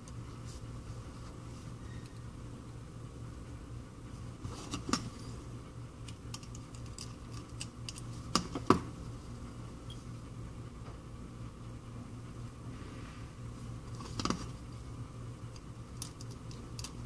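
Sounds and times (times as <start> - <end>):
steady low hum: 0.0 - 17.0
small tools and parts clicking: 15.5 - 17.0.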